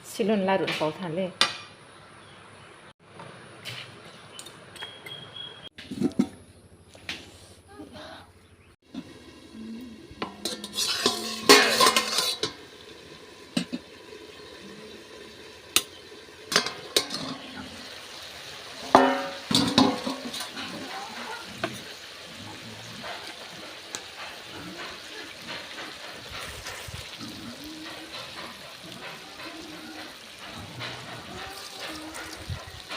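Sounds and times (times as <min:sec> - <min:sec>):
food sizzling: 0:08.8 - 0:32.9
utensil knocking against pan: 0:19.0 - 0:20.4.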